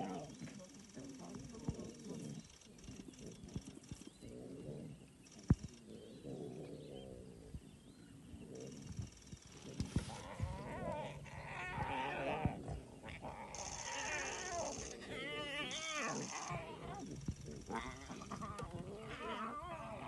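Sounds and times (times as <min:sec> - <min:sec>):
lion cubs crying: 0:08.6 - 0:20.0.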